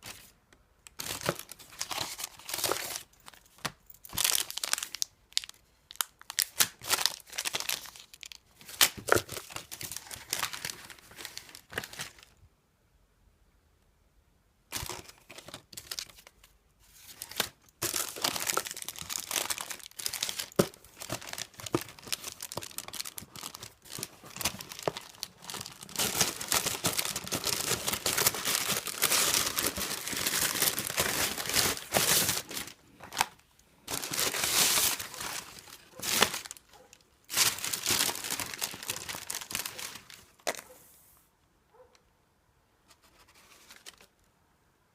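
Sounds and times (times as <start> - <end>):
packing material crinkling: 0.9 - 12.4, 14.7 - 40.8
packing material tearing: 17.1 - 33.3, 33.9 - 36.7.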